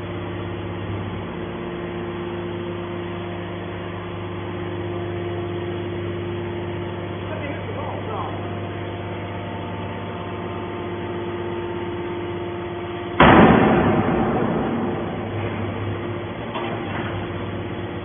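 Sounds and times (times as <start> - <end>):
can baler motor and pump hum: 0.0 - 18.0
sudden loud burst of noise: 13.1 - 16.8.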